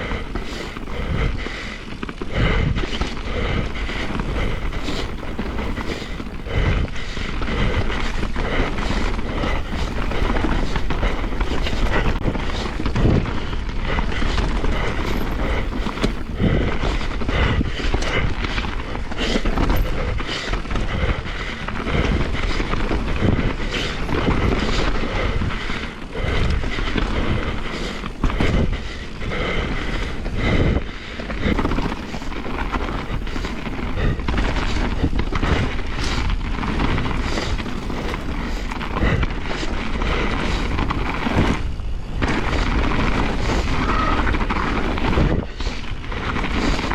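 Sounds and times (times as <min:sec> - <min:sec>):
bike rattling and knocking: 0:00.0 - 0:30.0, 0:30.6 - 0:46.9
bike tyres rolling over dirt: 0:00.0 - 0:46.9
wind on microphone: 0:00.0 - 0:46.9.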